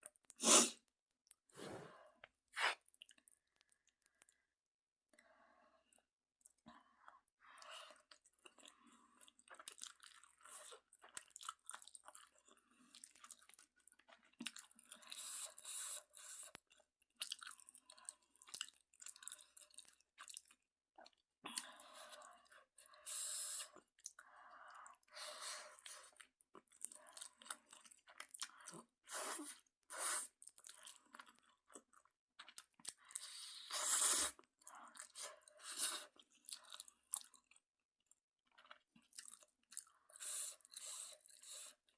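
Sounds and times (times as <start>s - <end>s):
wet chewing mouth sounds: 7.7s - 22.5s, 38.5s - 41.9s.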